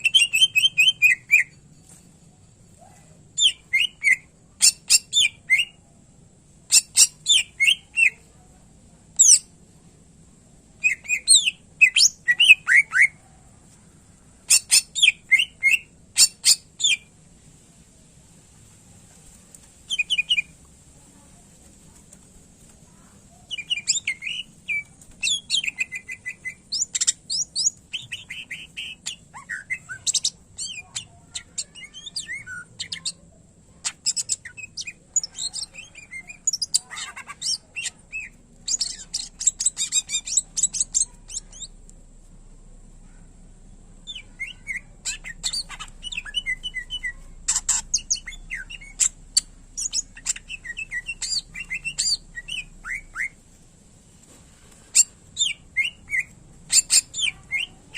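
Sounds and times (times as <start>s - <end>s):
bird singing chirps and trills: 0.0s - 1.9s, 3.4s - 5.8s, 6.7s - 8.3s, 10.8s - 13.2s, 22.9s - 33.2s, 33.8s - 41.8s, 44.0s - 53.4s, 55.0s - 57.9s.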